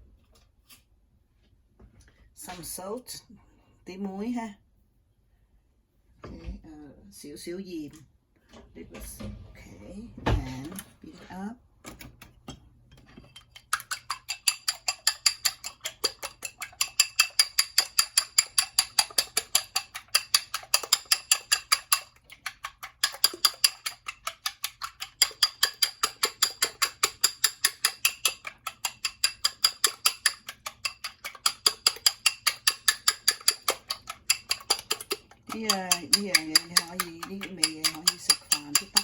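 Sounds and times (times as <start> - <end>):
utensil clinking against bowl: 12.5 - 39.0.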